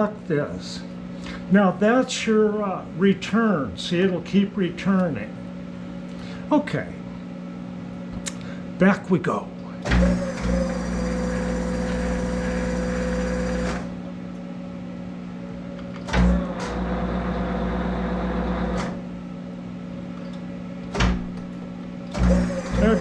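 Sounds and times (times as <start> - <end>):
electrical hum: 0.0 - 23.0
lathe running in reverse: 10.0 - 13.9, 16.3 - 19.0, 22.2 - 23.0.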